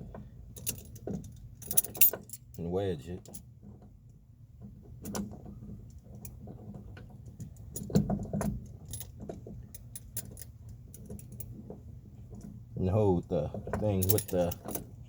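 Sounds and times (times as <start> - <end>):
low steady hum: 0.0 - 15.0
metal tools clicking on striker plate: 14.0 - 14.8.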